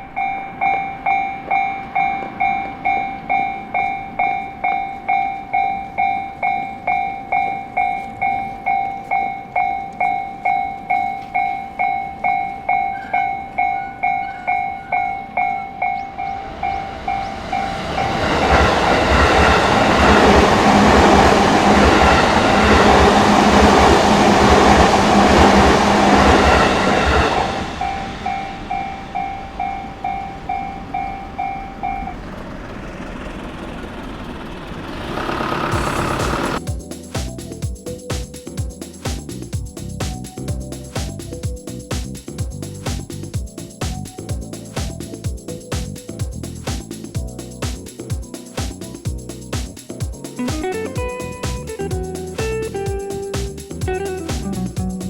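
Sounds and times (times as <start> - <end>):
level crossing bell ringing: 0.0 - 18.0, 27.4 - 32.4
train wheels clattering over rails: 16.0 - 38.2.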